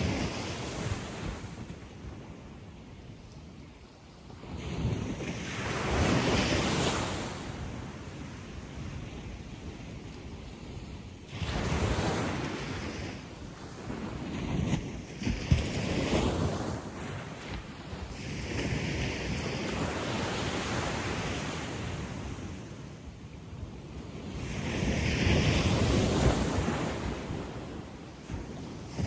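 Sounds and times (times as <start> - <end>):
sea waves washing up beach: 11.3 - 22.9.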